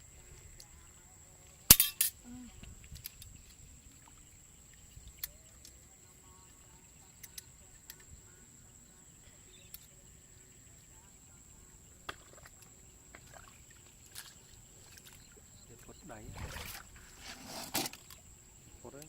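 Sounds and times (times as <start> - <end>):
faint clicks: 2.6 - 8.2, 9.6 - 10.0.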